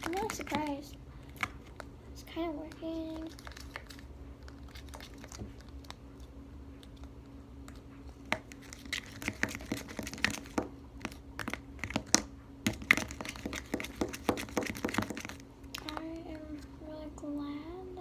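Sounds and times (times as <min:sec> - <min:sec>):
faint steady hum: 0:00.0 - 0:18.0.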